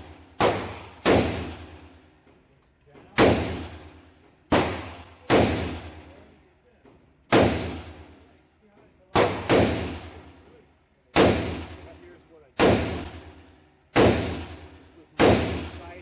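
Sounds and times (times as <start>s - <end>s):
rifle shots echoing: 0.0s - 1.9s, 3.2s - 6.1s, 7.3s - 8.2s, 9.1s - 10.4s, 11.1s - 12.0s, 12.6s - 16.0s.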